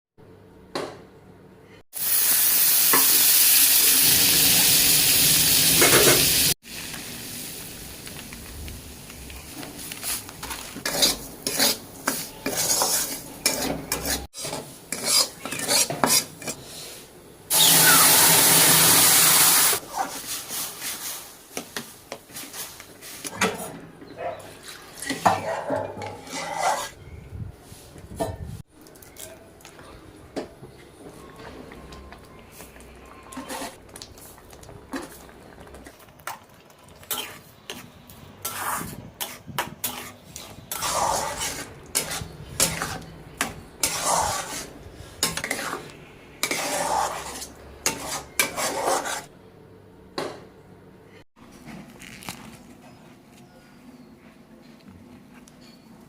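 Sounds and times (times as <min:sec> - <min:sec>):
food sizzling in a pan: 0:02.0 - 0:13.6, 0:17.5 - 0:19.8
spoon scraping a pan: 0:10.0 - 0:16.9, 0:24.6 - 0:27.0, 0:32.5 - 0:33.8, 0:37.0 - 0:49.3.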